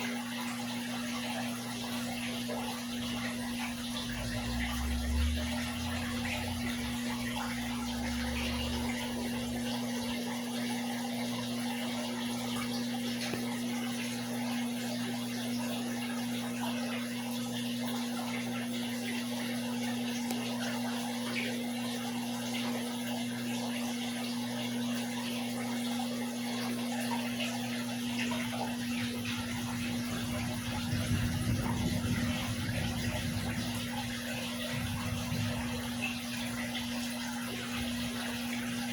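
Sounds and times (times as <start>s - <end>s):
aquarium water bubbling: 0.0s - 38.9s
electric pump hum: 0.0s - 38.9s
low rumble: 29.0s - 36.8s.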